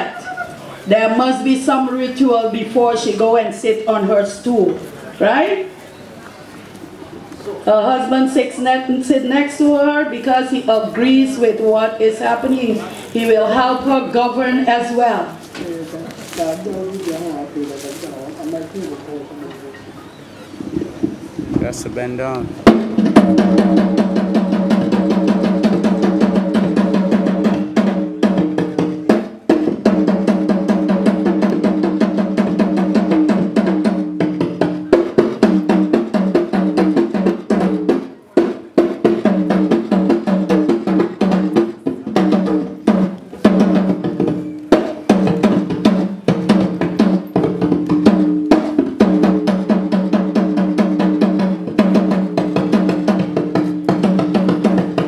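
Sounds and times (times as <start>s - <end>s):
fast drumming: 20.8s - 55.0s.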